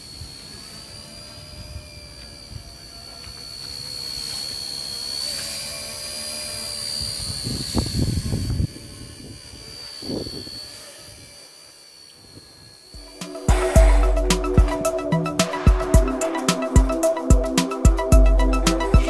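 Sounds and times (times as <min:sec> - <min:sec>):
small electric motor whining: 0:00.0 - 0:19.0.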